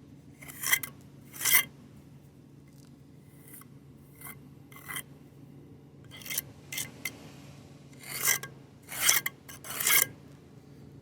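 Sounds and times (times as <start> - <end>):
hand tool scraping on concrete: 0.4 - 1.7, 3.3 - 5.1, 6.1 - 7.2, 8.0 - 10.2.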